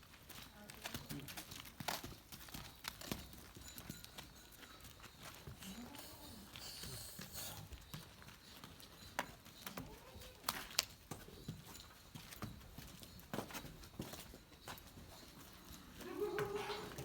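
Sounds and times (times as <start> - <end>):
cow breathing rush: 5.4 - 8.0
cow grunting: 16.1 - 17.0.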